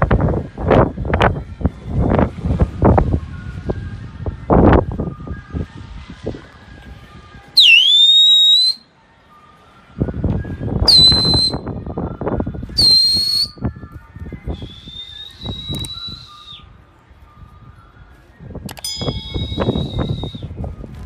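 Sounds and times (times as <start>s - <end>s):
rustling wind-like noise: 0.0s - 7.9s, 8.9s - 21.0s
sharp high-pitched whistles: 7.6s - 8.9s, 10.8s - 11.8s, 12.7s - 13.7s, 14.5s - 16.8s, 18.8s - 20.6s.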